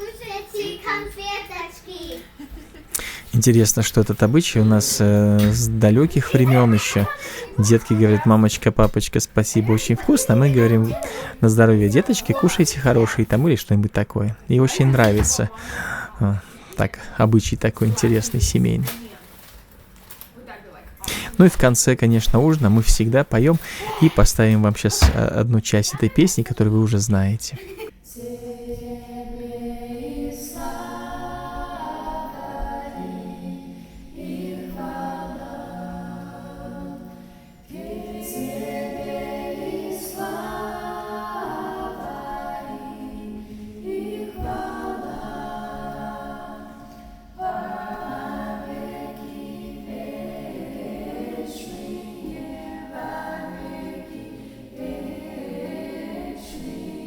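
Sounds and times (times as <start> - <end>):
people singing unaccompanied: 2.8 - 16.3, 17.1 - 18.8, 21.1 - 26.6, 27.9 - 57.0.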